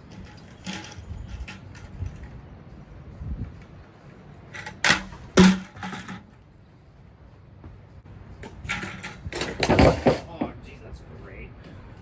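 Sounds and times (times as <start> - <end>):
hard objects knocking and clattering: 8.7 - 10.5.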